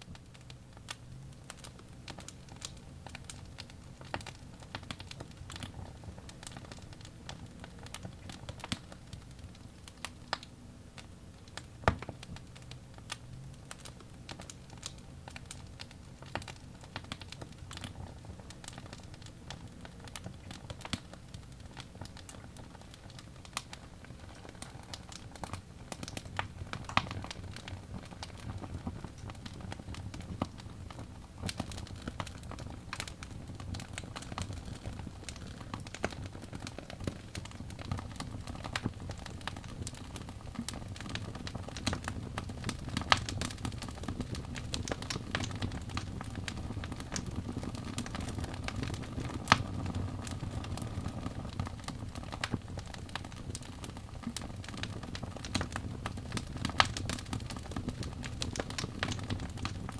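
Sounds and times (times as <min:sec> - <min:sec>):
wood fire crackling and popping: 0:00.0 - 0:59.9.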